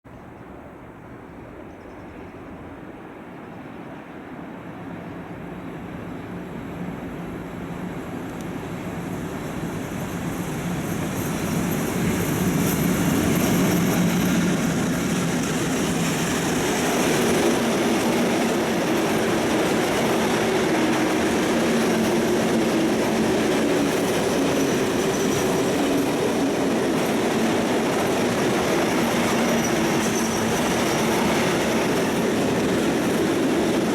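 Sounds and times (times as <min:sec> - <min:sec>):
freight train passing: 0:00.3 - 0:33.9
high wheel squeal: 0:09.7 - 0:19.3, 0:19.9 - 0:33.9.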